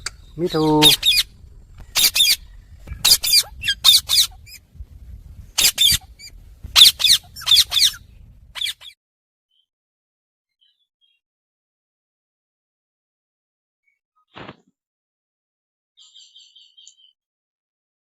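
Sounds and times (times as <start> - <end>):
parakeet chirping: 0.0 - 9.0.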